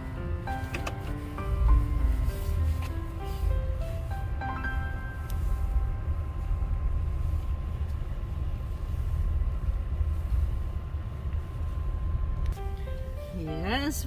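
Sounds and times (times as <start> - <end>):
background music: 0.0 - 7.2, 12.6 - 14.0
faint steady whine: 0.0 - 14.0
vehicle interior rumble: 0.0 - 14.0.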